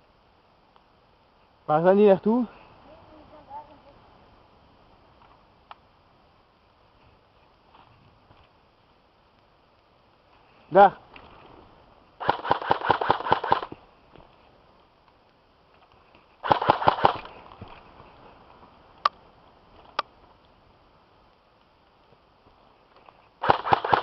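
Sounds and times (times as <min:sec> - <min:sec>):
airsoft gun full-auto bursts: 0:12.2 - 0:13.7, 0:16.4 - 0:17.3, 0:23.4 - 0:24.0
airsoft gun single cracks: 0:12.2 - 0:13.8, 0:16.4 - 0:17.3, 0:23.4 - 0:24.0.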